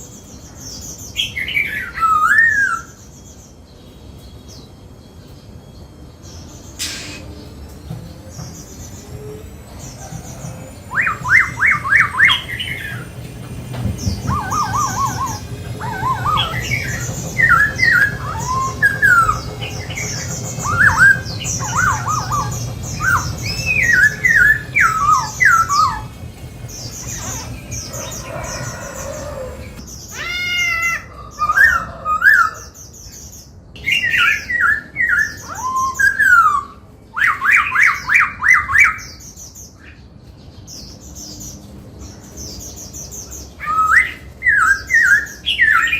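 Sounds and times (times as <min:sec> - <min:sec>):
laughingthrush singing: 0:06.7 - 0:32.7.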